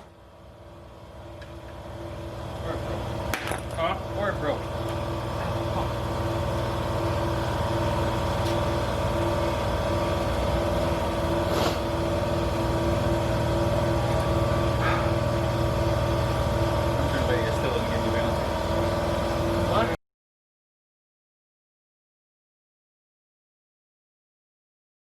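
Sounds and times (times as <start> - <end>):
motor humming steadily: 0.0 - 20.0.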